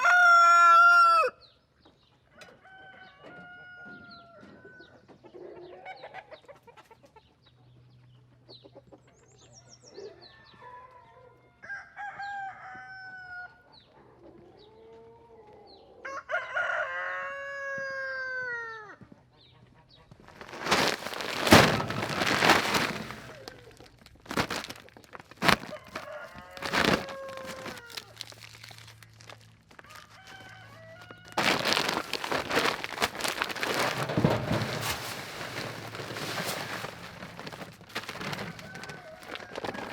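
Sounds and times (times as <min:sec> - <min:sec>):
rooster crowing: 0:00.0 - 0:01.4, 0:16.0 - 0:18.8, 0:25.7 - 0:28.1, 0:29.9 - 0:31.8
chickens clucking: 0:05.1 - 0:07.5.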